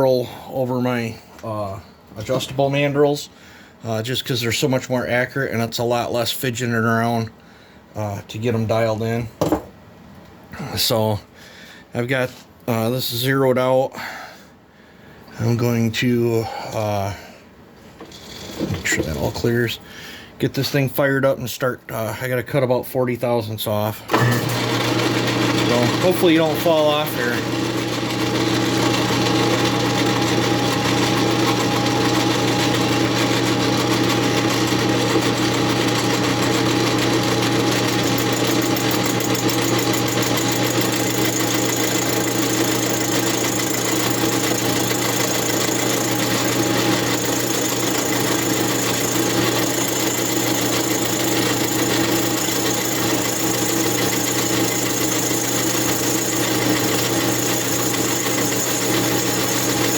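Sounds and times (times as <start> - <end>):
metal lathe running: 24.1 - 59.9.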